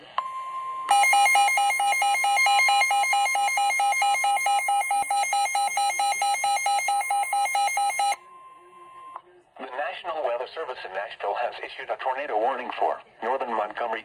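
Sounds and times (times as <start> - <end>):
steady warning alarm tone: 0.3 - 8.2
rapid electronic alarm beeping: 0.9 - 8.2.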